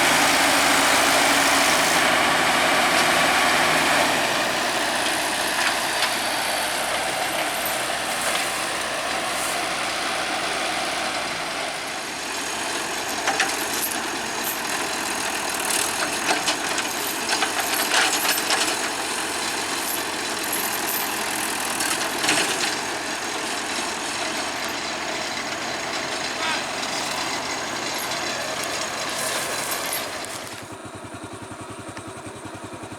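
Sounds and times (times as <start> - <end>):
heavy machinery engine running: 0.0 - 32.9.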